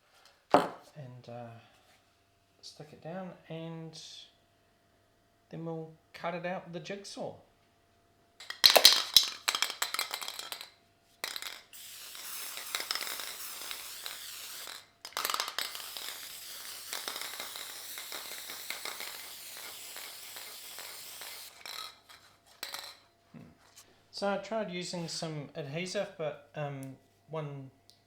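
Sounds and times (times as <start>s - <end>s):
aerosol can rattling: 8.4s - 23.0s
spray nozzle hissing: 11.8s - 21.8s.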